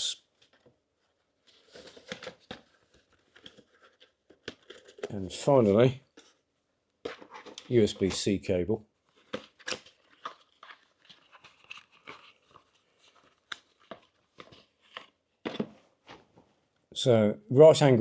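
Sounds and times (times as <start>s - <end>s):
packaging rustling and crinkling: 1.4s - 5.5s, 9.0s - 16.4s.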